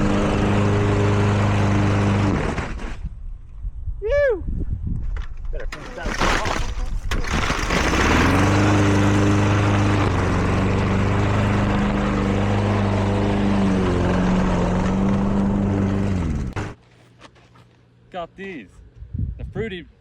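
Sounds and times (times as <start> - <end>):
lawn mower engine shredding: 0.0 - 3.1, 5.7 - 16.8.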